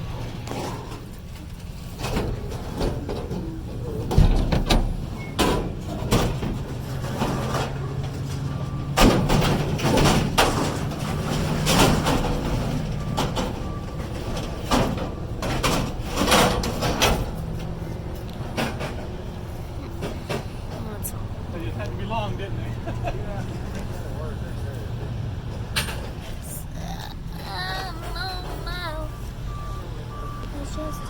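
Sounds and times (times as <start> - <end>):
scrap metal clanking: 0.0 - 21.0.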